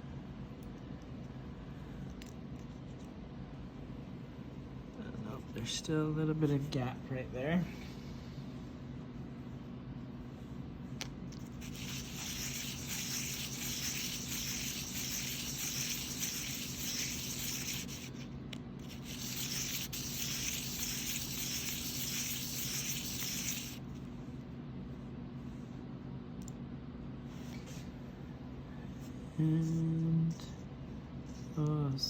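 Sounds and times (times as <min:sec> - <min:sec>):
metal rubbed on sandpaper: 0:11.4 - 0:18.2, 0:18.8 - 0:23.8.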